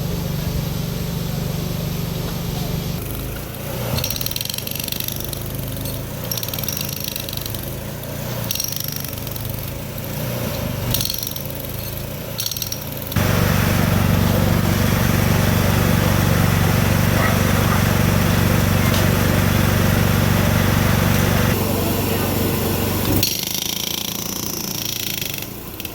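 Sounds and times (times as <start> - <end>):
engine drone: 0.0 - 25.9
hydraulic breaker hammering: 3.0 - 25.9.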